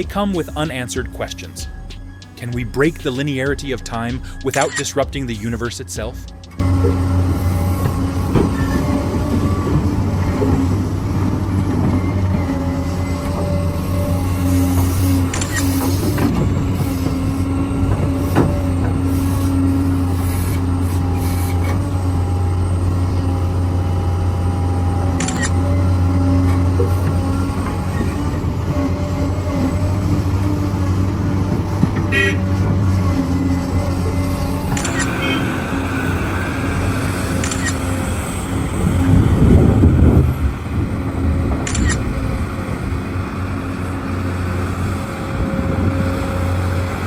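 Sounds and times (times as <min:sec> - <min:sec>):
large engine droning: 0:00.0 - 0:47.0
short high clicks: 0:37.4 - 0:37.8.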